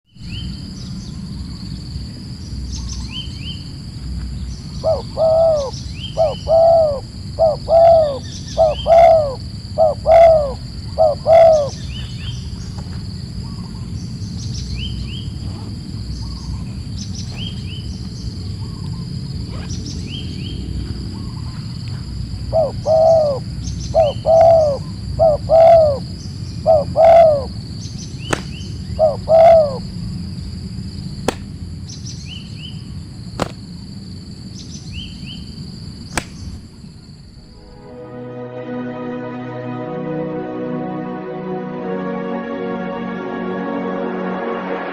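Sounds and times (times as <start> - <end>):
high-pitched insect tones: 1.4 - 12.6
dove cooing: 4.8 - 12.0, 21.1 - 27.6, 28.9 - 29.9
sharp click: 36.1 - 36.4.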